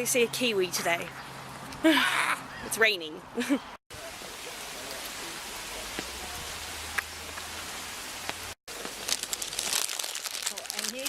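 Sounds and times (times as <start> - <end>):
steady rain hiss: 3.9 - 11.0.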